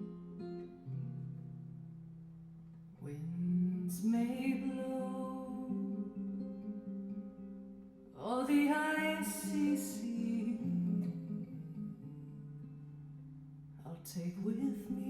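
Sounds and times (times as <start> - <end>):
plucked guitar: 0.0 - 15.0
person singing: 3.0 - 6.4, 8.2 - 12.4, 13.9 - 15.0.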